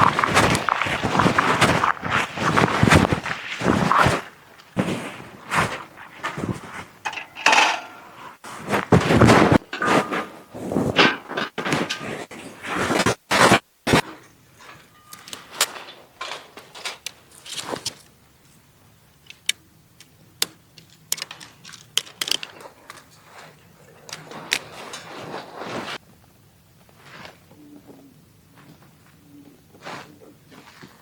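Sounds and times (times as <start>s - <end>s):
rustling of handled objects: 0.0s - 18.6s, 20.5s - 26.0s
sharp clicks and light knocks: 19.2s - 23.2s.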